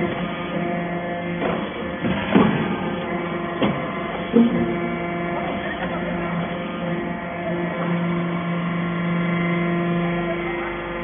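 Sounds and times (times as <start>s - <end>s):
hydraulic power unit humming: 0.0s - 11.0s.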